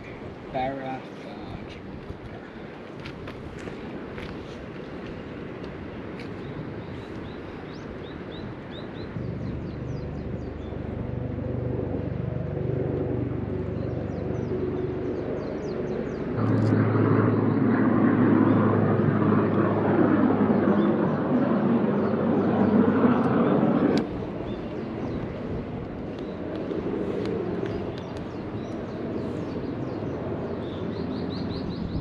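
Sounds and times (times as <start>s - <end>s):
small birds chirping: 26.1s - 32.0s.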